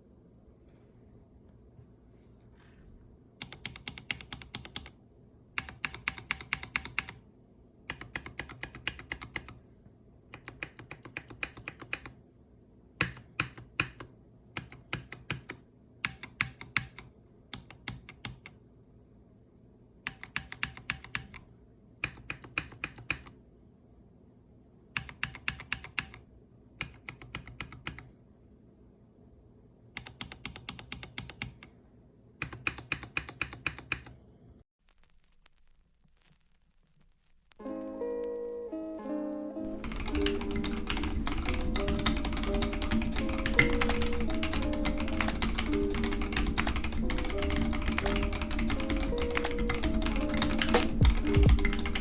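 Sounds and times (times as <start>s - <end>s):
mechanical keyboard typing: 3.4s - 5.0s, 5.6s - 7.2s, 7.9s - 9.6s, 10.3s - 12.2s, 13.0s - 18.6s, 20.1s - 23.4s, 25.0s - 26.2s, 26.8s - 28.1s, 30.0s - 31.7s, 32.4s - 34.2s, 39.8s - 52.0s.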